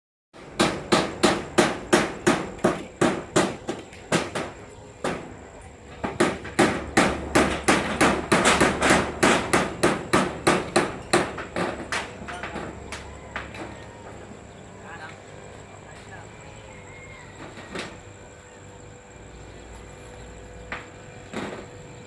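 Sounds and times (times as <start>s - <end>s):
hammer blows: 0.4s - 14.2s.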